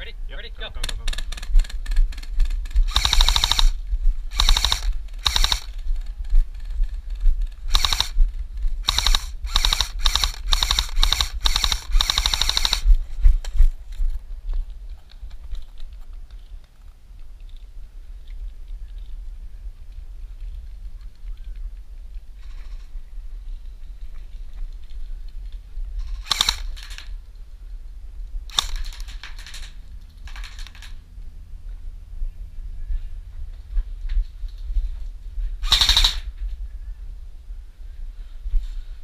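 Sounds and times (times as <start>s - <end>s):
airsoft rifle firing bursts: 1.1s - 5.8s, 7.7s - 8.2s, 8.8s - 13.0s, 26.0s - 27.0s, 28.5s - 29.0s, 35.6s - 36.2s.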